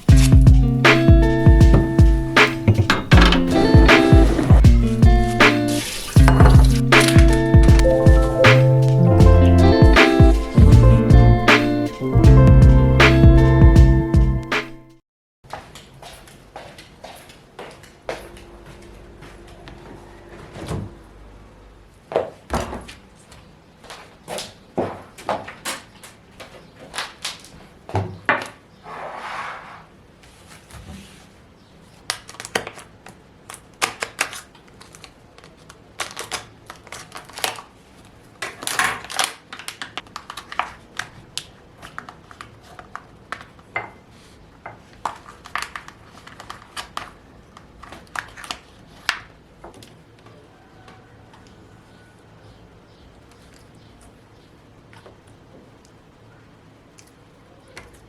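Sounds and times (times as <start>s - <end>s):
objects knocking and clattering: 2.6s - 4.7s, 5.8s - 7.9s.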